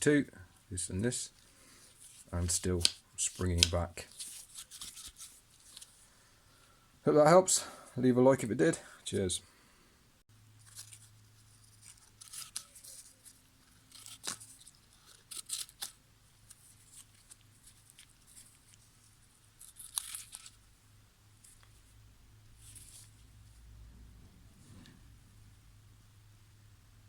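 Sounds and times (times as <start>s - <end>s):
low steady hum: 16.0s - 27.0s.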